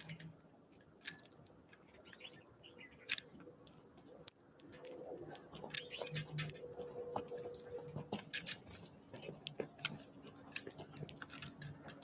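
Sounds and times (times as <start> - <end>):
birds pecking taps and clicks: 0.0 - 12.0.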